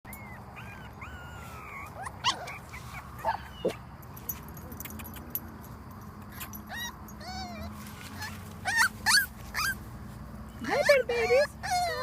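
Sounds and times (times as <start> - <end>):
puppies whimpering: 0.1 - 3.8, 6.3 - 9.9, 10.6 - 12.0
puppy yelps: 0.1 - 3.8, 6.4 - 9.8, 11.6 - 12.0.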